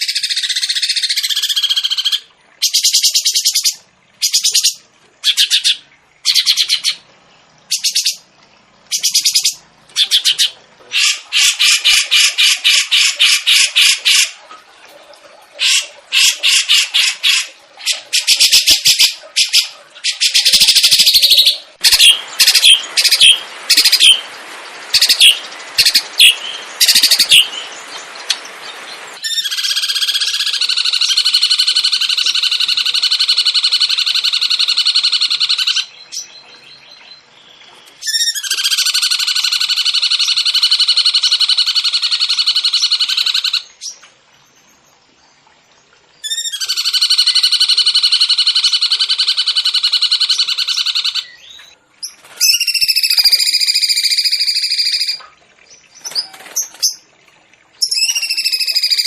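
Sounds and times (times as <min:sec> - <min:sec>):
songbird chattering and trilling: 0:00.0 - 0:07.0, 0:07.7 - 0:08.2, 0:08.9 - 0:14.3, 0:15.6 - 0:44.0, 0:57.8 - 0:59.0.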